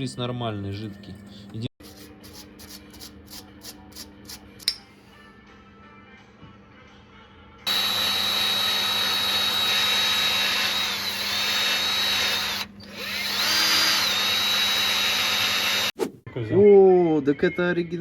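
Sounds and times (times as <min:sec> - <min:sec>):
power tool high whine: 0:07.7 - 0:15.9.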